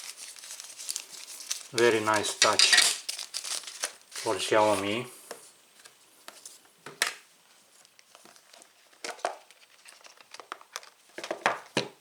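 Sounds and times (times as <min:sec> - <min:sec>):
packaging rustling and crinkling: 0:00.0 - 0:05.1, 0:07.7 - 0:11.8.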